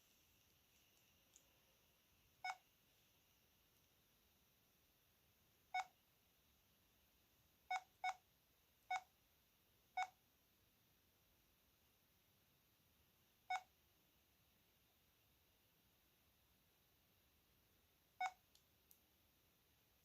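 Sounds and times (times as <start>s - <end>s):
phone keypad beeps: 5.7s - 5.9s, 7.7s - 8.2s, 10.0s - 10.2s, 18.2s - 18.4s.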